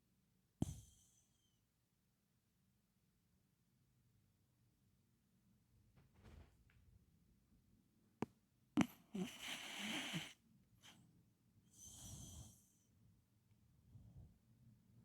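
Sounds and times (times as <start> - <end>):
dog snoring: 8.8 - 11.0, 11.7 - 12.8.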